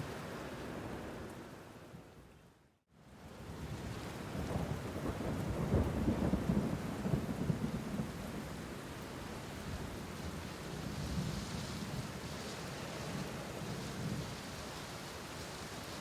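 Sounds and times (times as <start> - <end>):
rain falling: 0.0 - 1.9, 3.1 - 16.0.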